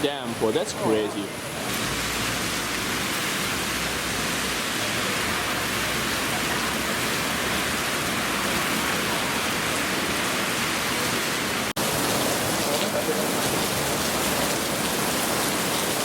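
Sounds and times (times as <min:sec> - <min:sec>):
rain falling: 0:00.0 - 0:16.0.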